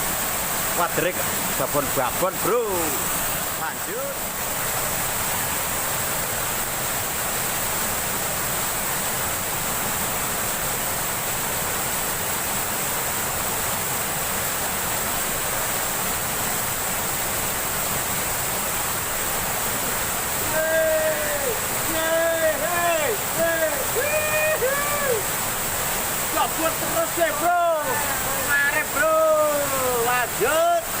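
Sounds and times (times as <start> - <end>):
river water rushing: 0.0 - 31.0.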